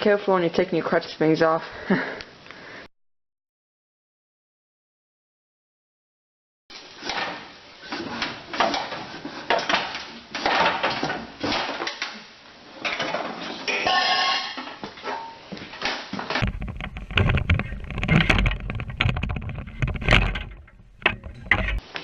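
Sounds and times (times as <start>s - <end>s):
metal tools clanking: 16.4s - 21.8s.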